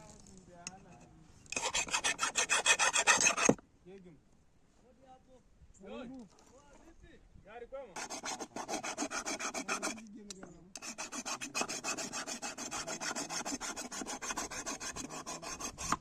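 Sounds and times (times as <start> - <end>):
rapid rasping strokes: 1.5 - 3.6, 8.0 - 10.1, 10.8 - 16.0.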